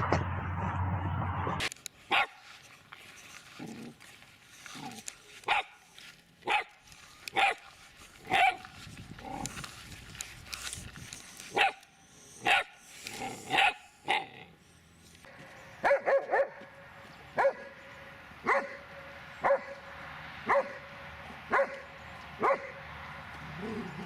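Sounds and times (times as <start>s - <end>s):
dog barking: 2.1s - 2.4s, 5.5s - 5.8s, 6.5s - 6.7s, 7.4s - 7.6s, 8.3s - 8.6s, 11.6s - 11.8s, 12.4s - 12.7s, 13.5s - 14.4s, 15.8s - 16.6s, 17.4s - 17.8s, 18.4s - 18.8s, 19.4s - 19.8s, 20.5s - 20.8s, 21.5s - 22.8s.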